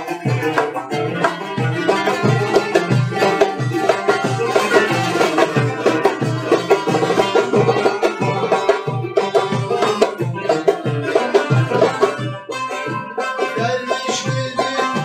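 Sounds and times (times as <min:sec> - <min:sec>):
folk music: 0:00.0 - 0:15.0
hand drum beat: 0:00.0 - 0:15.0.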